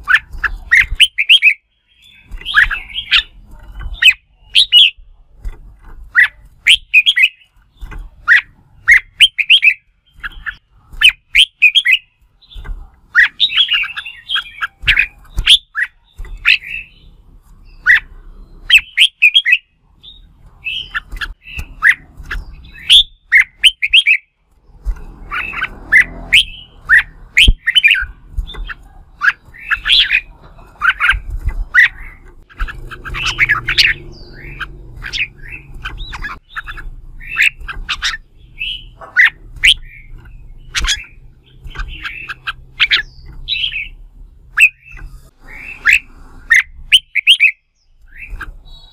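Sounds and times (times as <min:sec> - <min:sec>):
bird chattering song: 0:00.0 - 0:48.9.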